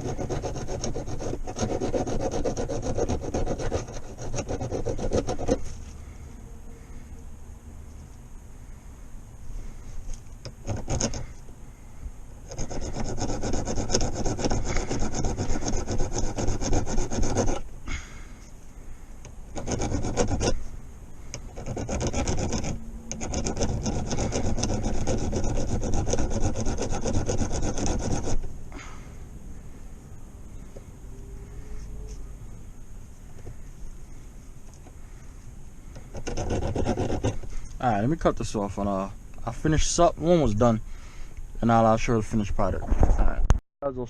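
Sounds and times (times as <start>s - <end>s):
file rasping on metal: 0.0s - 5.7s, 10.5s - 11.4s, 12.5s - 17.6s, 19.5s - 20.7s, 21.3s - 28.5s, 36.0s - 37.5s.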